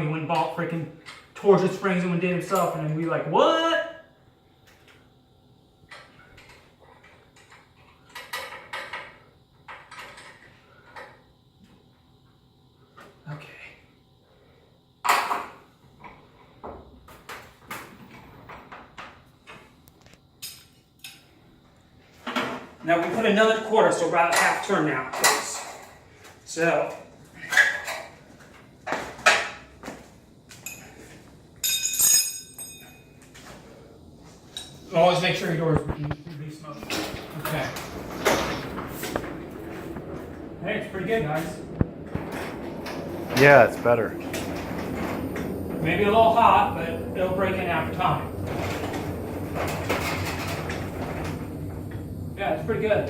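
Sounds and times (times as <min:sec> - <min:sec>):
metal bars clinking: 0:31.6 - 0:33.1.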